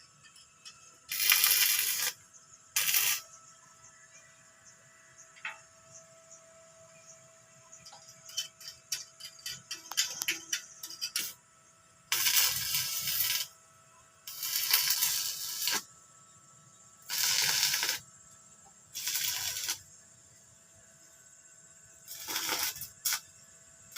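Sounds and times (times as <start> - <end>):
fireworks crackling: 1.1 - 2.2, 2.8 - 3.2, 12.1 - 13.5, 14.3 - 15.8, 17.1 - 18.0, 19.0 - 19.8, 22.1 - 23.2
fireworks hissing bursts: 1.1 - 2.2, 2.8 - 3.2, 12.1 - 13.6, 14.3 - 15.9, 17.0 - 18.0, 18.9 - 19.9, 22.0 - 23.3.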